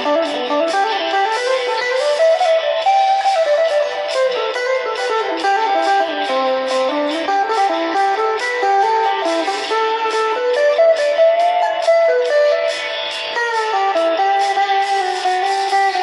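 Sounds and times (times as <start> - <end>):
guitar picking quick notes: 0.0 - 16.0.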